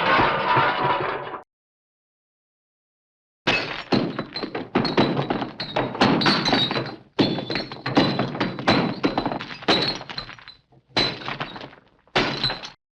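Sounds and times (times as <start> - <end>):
crashing and breaking impacts: 3.5 - 12.8
debris falling: 3.5 - 12.8
glass shattering: 3.5 - 12.8.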